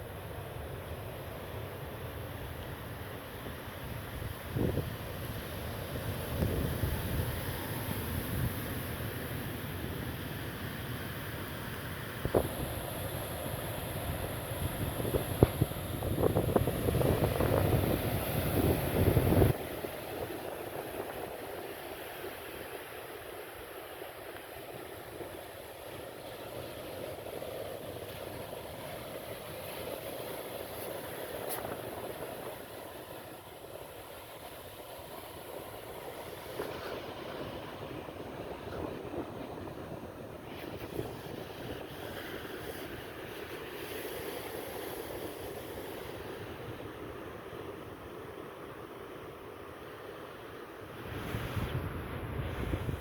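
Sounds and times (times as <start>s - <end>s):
sea surf washing: 0.0s - 53.0s
wind rumbling on microphone: 3.8s - 9.4s, 12.2s - 22.8s, 35.5s - 48.1s, 50.8s - 53.0s.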